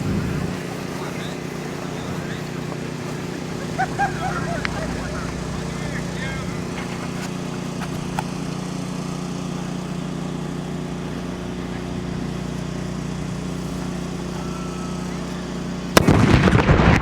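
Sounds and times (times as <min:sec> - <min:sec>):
low engine hum: 0:00.0 - 0:17.0
loud explosive blast: 0:16.0 - 0:17.0.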